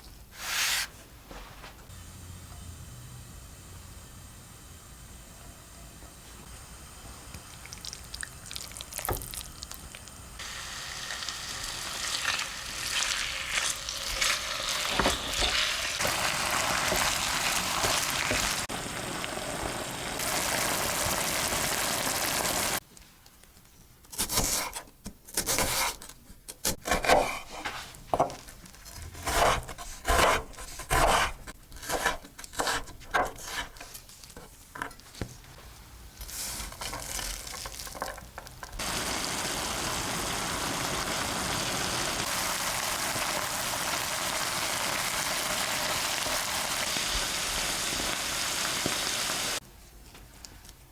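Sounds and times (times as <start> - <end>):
food sizzling in hot oil: 6.5 - 22.8, 38.8 - 49.6.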